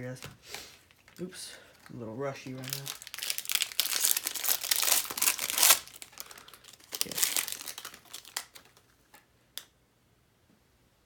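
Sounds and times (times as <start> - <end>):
wrapper crinkling: 0.0 - 9.2.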